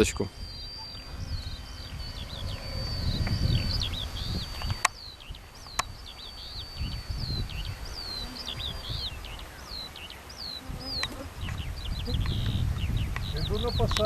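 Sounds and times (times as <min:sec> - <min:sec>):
faint high whine: 0:00.0 - 0:14.0
small birds chirping: 0:00.0 - 0:14.0
wind rumble on microphone: 0:00.0 - 0:14.0
sharp click: 0:05.6 - 0:05.9.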